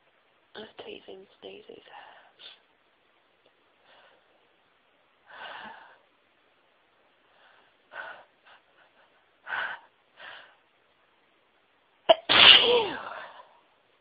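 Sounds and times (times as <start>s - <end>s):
woman sneezing: 12.1s - 13.4s.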